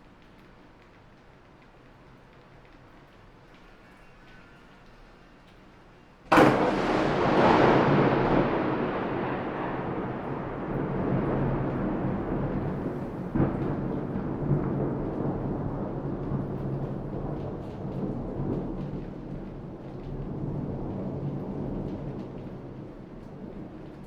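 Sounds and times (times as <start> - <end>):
rolling thunder rumble: 6.3 - 24.0
thunder crack: 6.3 - 24.0.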